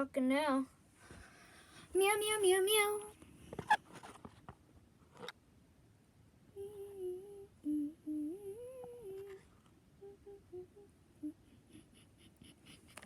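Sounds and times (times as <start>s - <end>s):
person humming a tune: 6.6s - 12.8s.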